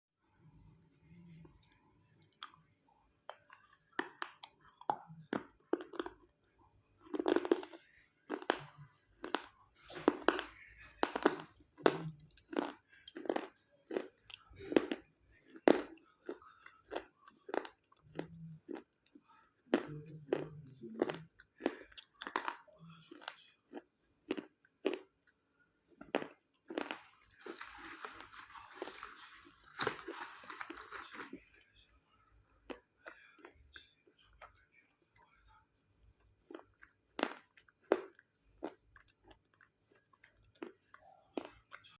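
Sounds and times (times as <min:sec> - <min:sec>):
gritty crunching chewing: 0:01.5 - 0:06.3, 0:07.0 - 0:31.7, 0:36.3 - 0:41.9
slate pencil crunching: 0:27.0 - 0:31.5.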